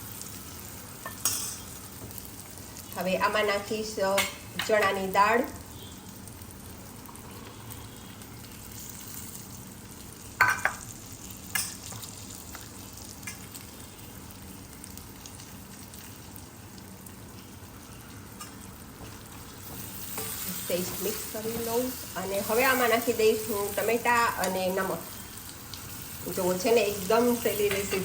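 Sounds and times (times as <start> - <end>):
food sizzling in oil: 0.0 - 28.0
metal utensil clanking on pan: 1.0 - 1.7, 27.5 - 28.0.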